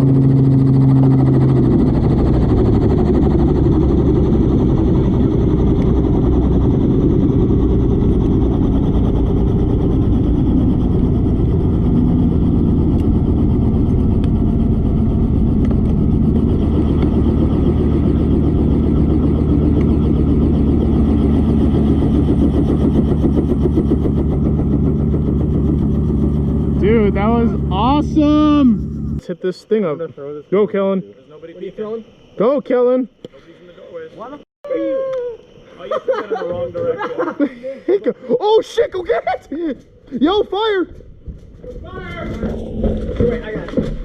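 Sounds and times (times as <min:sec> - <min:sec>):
vehicle engine running: 0:00.0 - 0:29.3.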